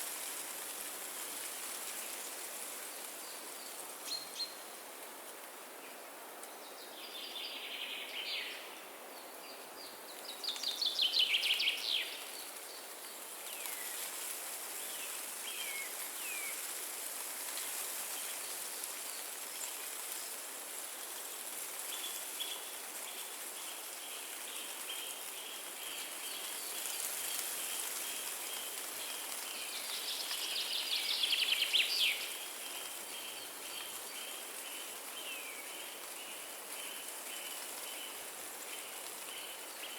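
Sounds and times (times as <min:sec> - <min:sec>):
wind through trees: 0:00.0 - 0:39.9
songbirds singing: 0:21.9 - 0:38.2.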